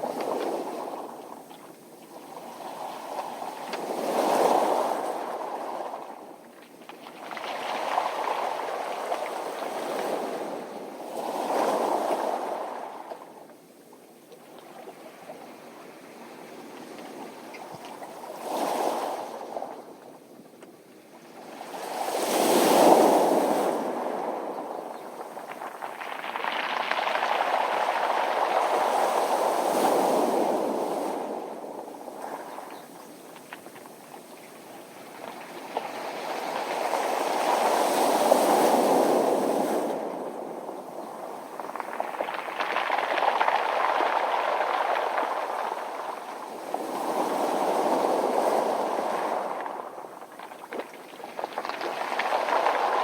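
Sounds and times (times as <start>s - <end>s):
waves washing over pebbles: 2.4s - 13.3s, 21.4s - 53.0s.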